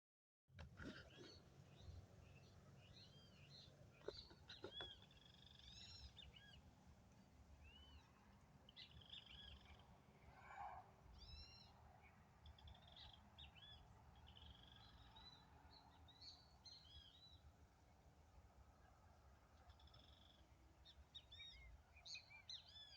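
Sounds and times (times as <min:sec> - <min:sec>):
birds chirping and calling: 0:00.8 - 0:06.6, 0:08.7 - 0:09.9.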